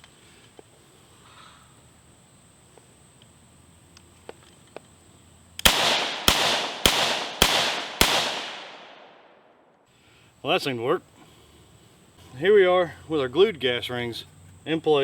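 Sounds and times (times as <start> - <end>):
rifle shots with echo: 5.6 - 9.6.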